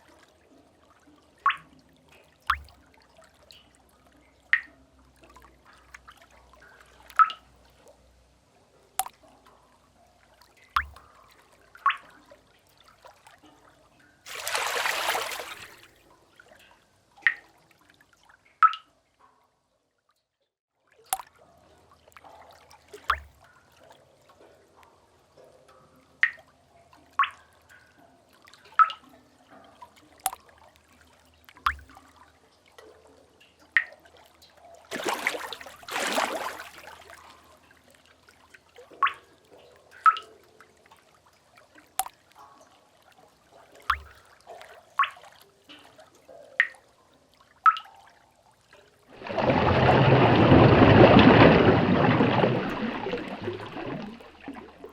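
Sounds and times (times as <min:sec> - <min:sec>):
water drops plinking into pool: 0:00.0 - 0:07.7, 0:09.0 - 0:09.6, 0:10.4 - 0:12.4, 0:16.6 - 0:17.6, 0:18.5 - 0:19.0, 0:21.0 - 0:21.4, 0:22.0 - 0:37.8, 0:38.8 - 0:40.9, 0:41.8 - 0:42.8, 0:43.8 - 0:48.2, 0:49.1 - 0:54.9
rush of water: 0:14.3 - 0:15.9, 0:34.9 - 0:37.2, 0:49.1 - 0:54.9.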